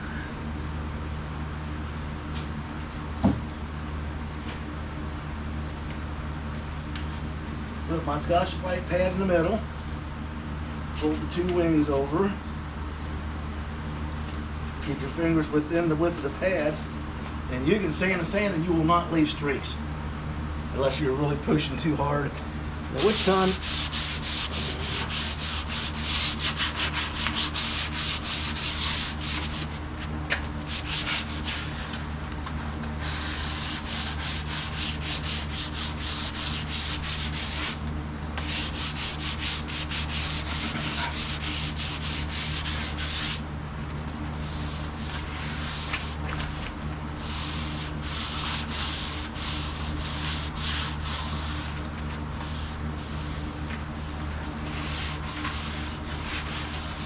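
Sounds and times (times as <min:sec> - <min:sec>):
steady low hum: 0:00.0 - 0:57.0
abrasive pad rubbing a car panel: 0:23.0 - 0:29.8, 0:30.6 - 0:32.1, 0:33.0 - 0:37.8, 0:38.4 - 0:43.4, 0:44.4 - 0:46.6, 0:47.2 - 0:57.0.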